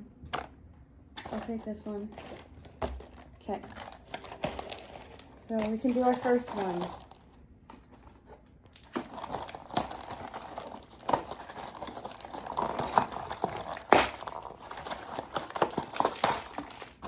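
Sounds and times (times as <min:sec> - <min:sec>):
plastic packs crinkling: 0:01.2 - 0:17.0.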